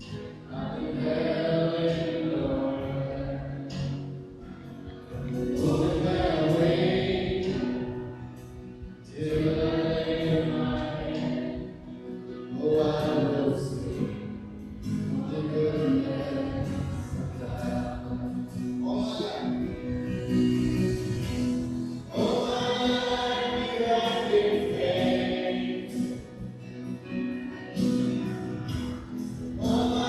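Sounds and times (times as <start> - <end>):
choir singing a hymn: 0.0 - 4.0, 5.1 - 30.0.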